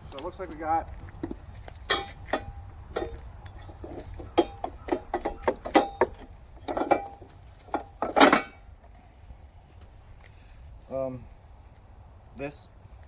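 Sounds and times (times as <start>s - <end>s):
metal parts clinking: 1.9s - 8.7s.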